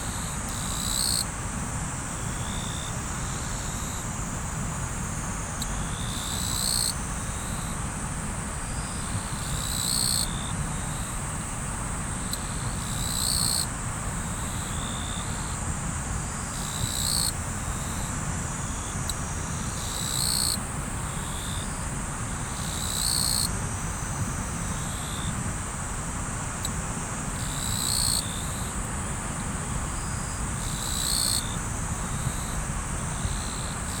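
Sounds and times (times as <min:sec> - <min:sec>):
insects trilling: 0:00.0 - 0:34.0
loud insect chirp: 0:00.0 - 0:34.0.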